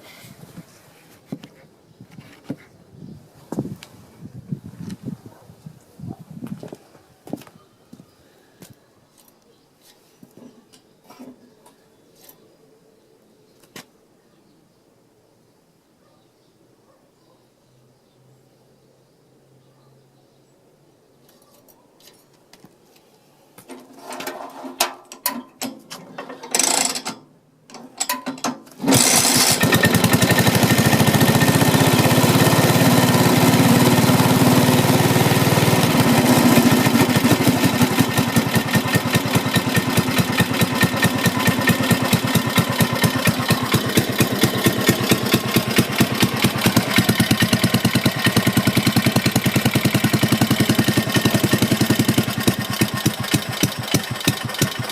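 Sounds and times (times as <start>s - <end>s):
small engine sputtering and running: 26.5s - 27.0s, 28.8s - 54.9s.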